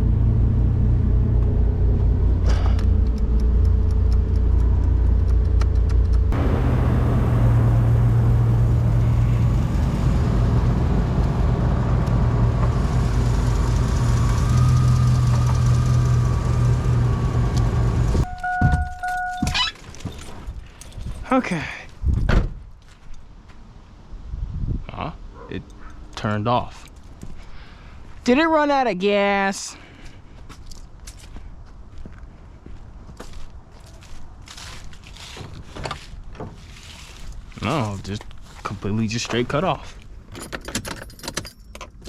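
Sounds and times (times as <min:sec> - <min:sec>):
car engine running: 0:00.0 - 0:21.4
short electronic beep: 0:18.2 - 0:19.7.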